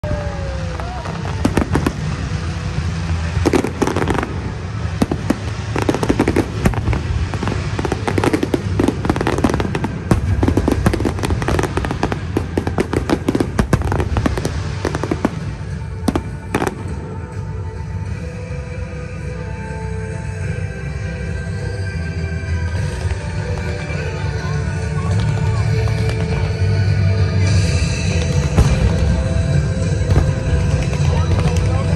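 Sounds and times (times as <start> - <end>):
fireworks bangs and crackles: 0.0 - 18.3, 22.5 - 31.9
music playing: 0.0 - 31.9.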